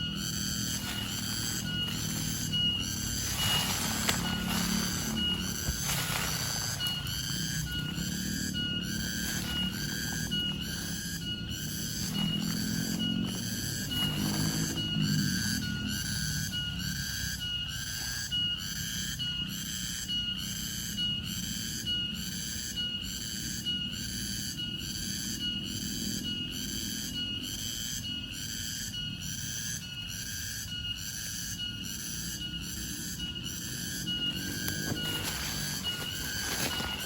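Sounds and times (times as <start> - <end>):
low outdoor rumble: 0.0 - 17.1
cricket chirping: 0.0 - 37.0.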